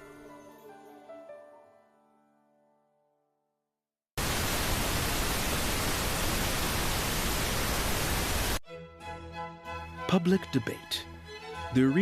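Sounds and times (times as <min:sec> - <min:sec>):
tv static hiss: 0:04.2 - 0:08.6.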